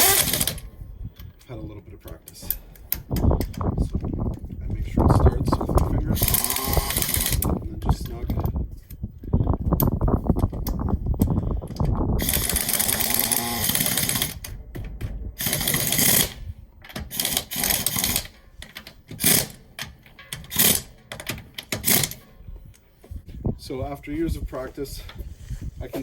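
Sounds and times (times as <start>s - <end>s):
pneumatic impact wrench rattling: 0.0s - 0.6s, 6.2s - 7.5s, 12.2s - 14.5s, 15.4s - 22.2s.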